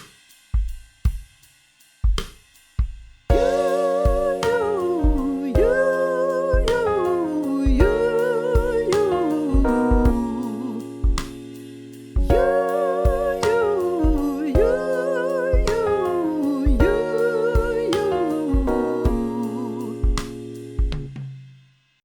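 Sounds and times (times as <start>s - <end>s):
kick drum: 2.1s - 4.4s, 5.0s - 5.8s, 7.7s - 8.0s, 9.6s - 10.4s, 11.0s - 11.4s, 12.2s - 13.4s, 14.0s - 14.8s, 16.7s - 17.8s, 18.6s - 19.4s, 20.0s - 21.2s
person singing vocal runs: 3.3s - 11.2s, 12.3s - 20.4s
keyboard chords: 3.3s - 21.2s.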